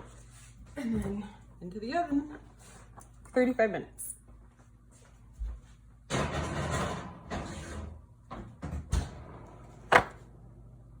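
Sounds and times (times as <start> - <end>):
pot scraping on oven rack: 6.1 - 8.0.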